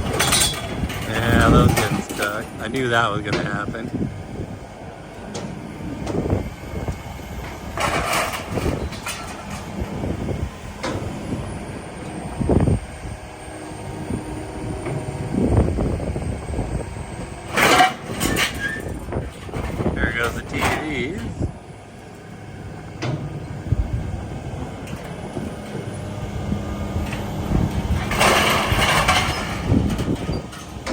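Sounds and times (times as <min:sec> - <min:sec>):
scrap scraping and clattering: 0:00.0 - 0:03.6, 0:07.8 - 0:09.8, 0:17.5 - 0:21.4, 0:27.0 - 0:30.9
loud bangs and grinding scrapes: 0:00.0 - 0:04.1, 0:05.2 - 0:30.9
heavy machinery rumbling: 0:00.0 - 0:30.9.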